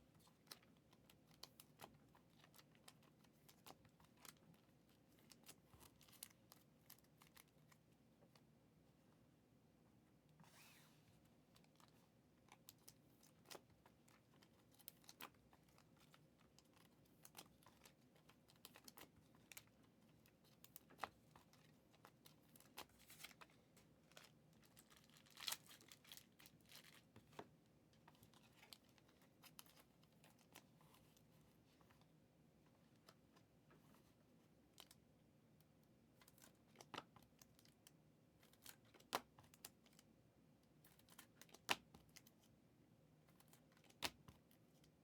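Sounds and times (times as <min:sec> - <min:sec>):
light crinkles: 0:10.3 - 0:35.1.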